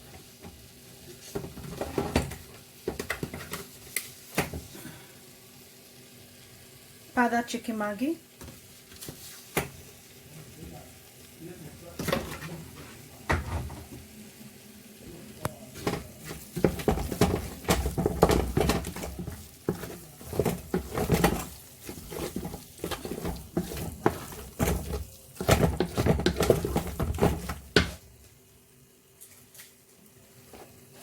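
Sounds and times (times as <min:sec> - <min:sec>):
utensils scraping a cooking pot: 0:01.2 - 0:03.7, 0:15.8 - 0:28.0.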